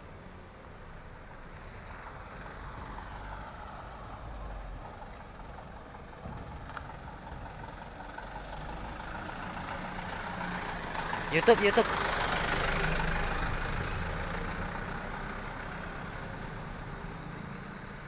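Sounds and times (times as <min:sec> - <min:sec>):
truck engine running: 0:04.8 - 0:18.0.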